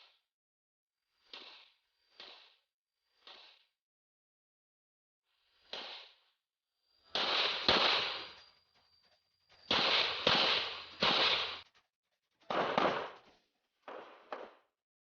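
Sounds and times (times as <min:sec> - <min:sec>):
pistol shots echoing: 0:07.2 - 0:08.4, 0:09.7 - 0:11.6, 0:12.5 - 0:13.3.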